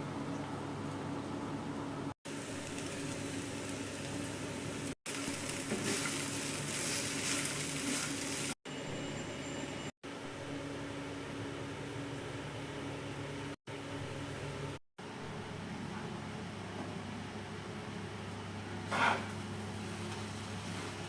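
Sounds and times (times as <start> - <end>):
food sizzling in hot oil: 2.3 - 8.6.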